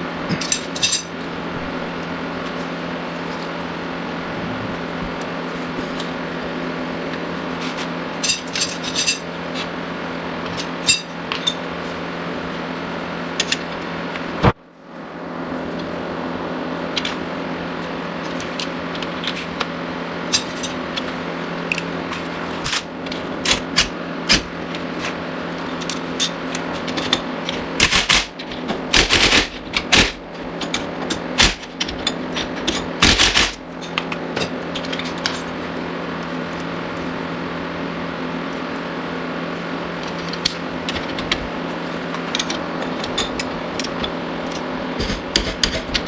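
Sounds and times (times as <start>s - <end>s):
steady mechanical hum: 0.0s - 46.0s
hand tools clinking on metal: 0.3s - 1.1s.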